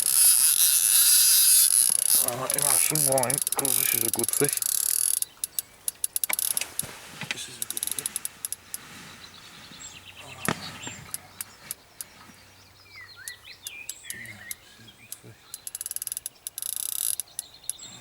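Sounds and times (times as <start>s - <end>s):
fishing reel clicking: 0.0s - 6.8s, 7.6s - 8.8s, 13.9s - 17.8s
small birds chirping: 0.0s - 18.0s.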